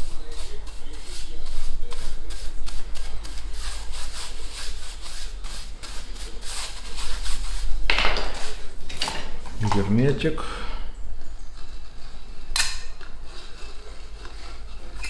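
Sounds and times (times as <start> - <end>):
brush scrubbing a tile: 0.0 - 8.8, 13.2 - 15.0.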